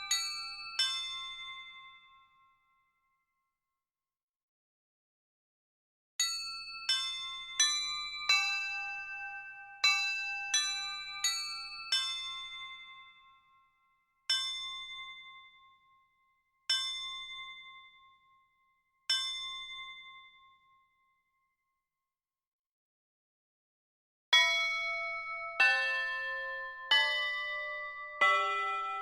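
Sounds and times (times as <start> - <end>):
clock chime tune: 25.4 - 29.0.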